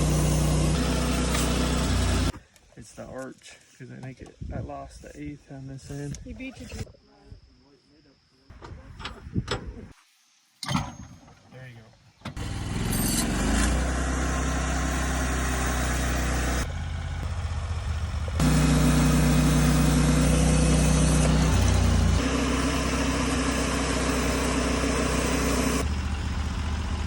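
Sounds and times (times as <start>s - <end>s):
sawmill engine running: 0.0s - 2.4s, 12.4s - 27.0s.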